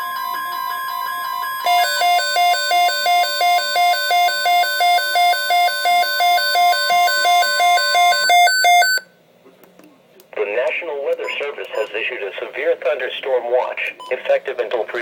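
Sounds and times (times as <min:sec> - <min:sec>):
two-pitch alternating alert tone: 0:00.0 - 0:09.0.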